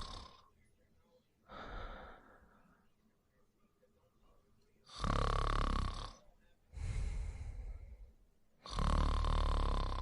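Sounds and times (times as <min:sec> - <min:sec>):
person snoring: 0:00.0 - 0:00.5, 0:04.9 - 0:06.2, 0:08.6 - 0:10.0
quiet breath: 0:00.0 - 0:03.4, 0:06.1 - 0:08.8.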